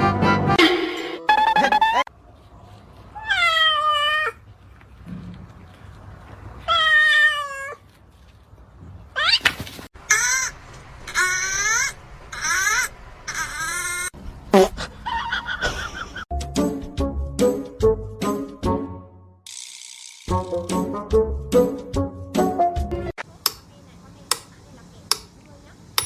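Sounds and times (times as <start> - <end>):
cat meowing: 3.2 - 4.4, 6.6 - 7.8.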